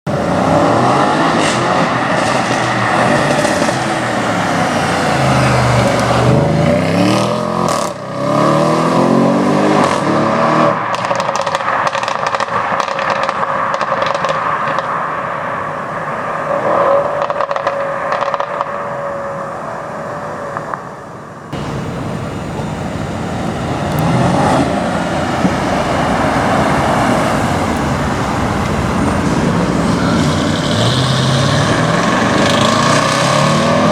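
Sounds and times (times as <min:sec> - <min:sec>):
exhaust crackles and pops: 0:00.1 - 0:06.5, 0:10.8 - 0:15.2, 0:16.5 - 0:18.8, 0:21.6 - 0:33.9
car engine accelerating hard: 0:00.1 - 0:12.4, 0:21.5 - 0:33.9.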